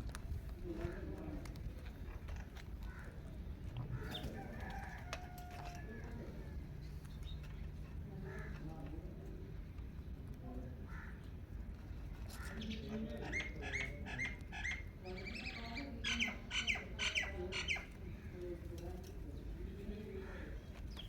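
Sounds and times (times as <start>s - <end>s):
parakeet squawking: 13.2s - 17.9s.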